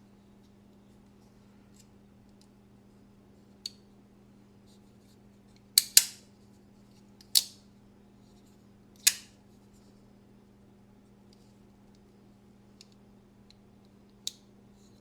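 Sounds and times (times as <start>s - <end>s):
folding knife metallic snaps: 5.8s - 6.2s, 7.2s - 7.6s, 9.0s - 9.3s.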